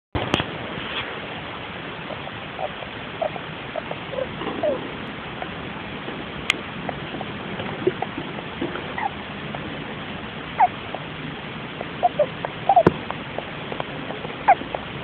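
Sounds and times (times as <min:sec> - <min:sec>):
steady hiss: 0:00.2 - 0:15.0
hamster squeaking: 0:02.1 - 0:04.8, 0:08.9 - 0:09.2, 0:10.6 - 0:11.1, 0:11.8 - 0:13.5, 0:14.1 - 0:14.8.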